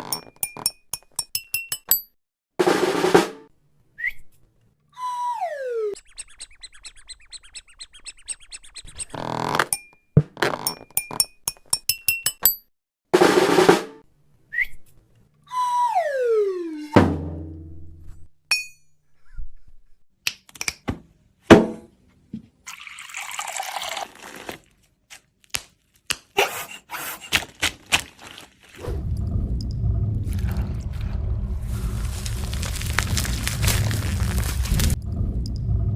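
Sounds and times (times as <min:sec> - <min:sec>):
falling whistle tone: 0:05.0 - 0:06.0, 0:15.5 - 0:17.0
low rumble: 0:28.8 - 0:35.9.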